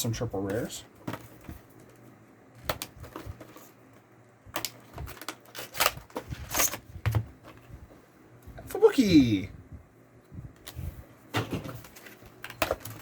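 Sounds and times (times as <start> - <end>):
trading cards snapping and rustling: 2.6 - 3.8, 4.5 - 7.5, 11.4 - 13.0.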